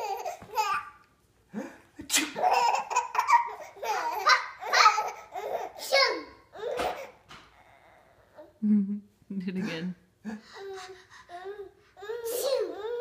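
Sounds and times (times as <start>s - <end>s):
baby laughing: 0.0s - 1.0s, 2.1s - 7.7s.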